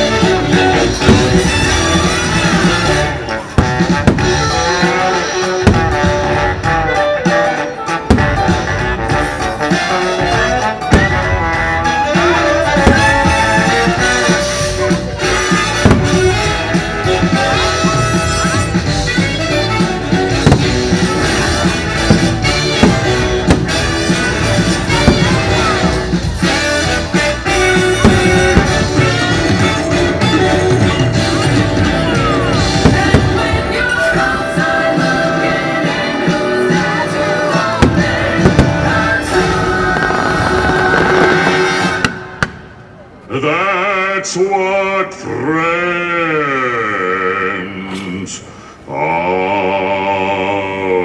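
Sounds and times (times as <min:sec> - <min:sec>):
soundtrack music with drums: 0:00.0 - 0:42.8
sharp hits: 0:00.5 - 0:06.9, 0:20.1 - 0:35.2.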